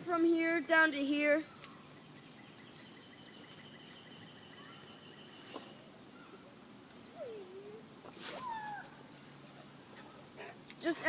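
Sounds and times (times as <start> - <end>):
insects chirring: 0.0 - 11.0
dog whimpering: 7.2 - 9.0.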